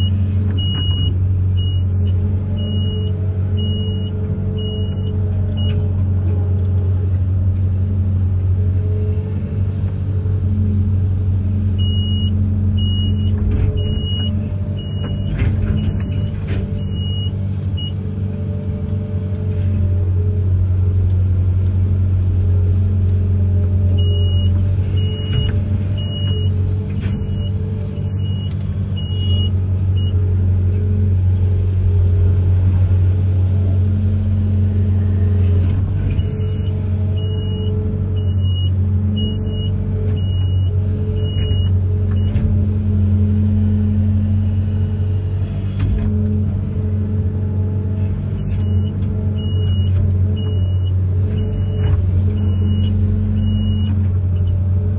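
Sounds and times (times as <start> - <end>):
excavator diesel engine running: 0.0 - 54.9.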